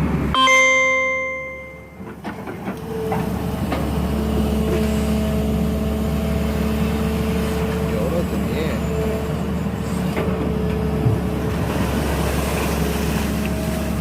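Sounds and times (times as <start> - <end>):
excavator diesel engine running: 0.0 - 14.0
ringing tone: 0.4 - 2.2.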